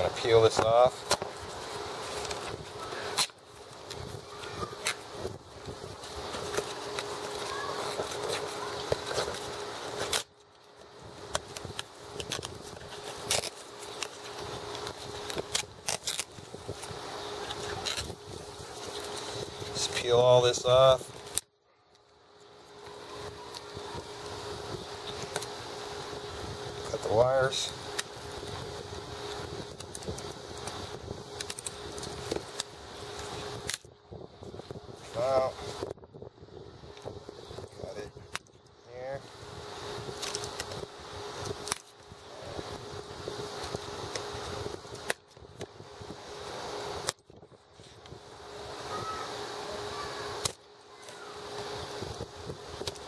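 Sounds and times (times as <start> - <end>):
faint steady hum: 0.0 - 53.0
material peeling off: 0.2 - 20.0
wire cutters snipping wires: 31.4 - 33.9, 41.4 - 41.9.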